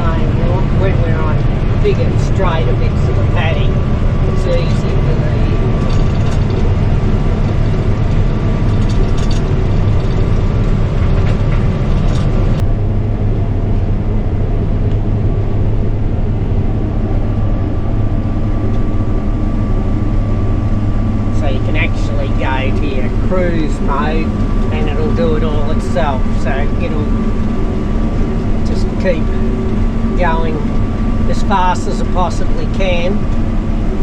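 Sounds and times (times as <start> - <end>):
cab rattles: 0.0 - 12.6
heavy diesel engine drone: 0.0 - 34.0
steady low hum: 0.0 - 34.0.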